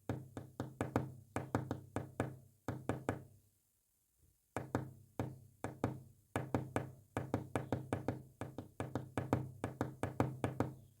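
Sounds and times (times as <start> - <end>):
rapid knocks on a surface: 0.0 - 3.3, 4.6 - 10.9.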